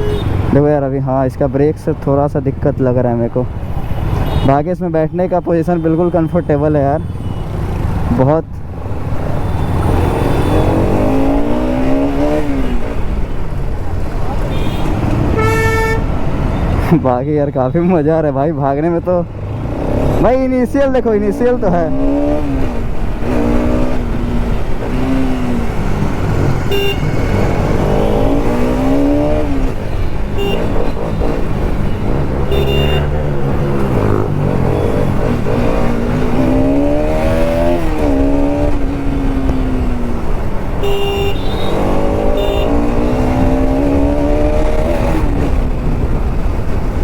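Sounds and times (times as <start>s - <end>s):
motorcycle engine revving: 8.8s - 13.4s, 19.2s - 20.5s, 21.4s - 47.0s.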